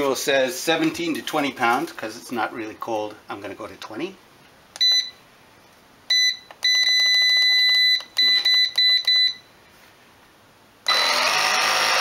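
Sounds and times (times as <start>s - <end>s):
electronic beeps: 6.1s - 9.5s.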